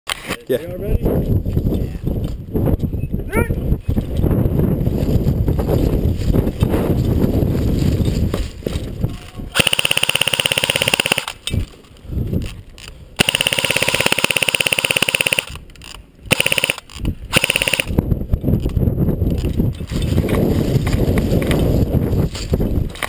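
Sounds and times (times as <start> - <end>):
airsoft gun firing bursts: 9.6 - 11.4, 13.2 - 15.6, 16.3 - 18.0.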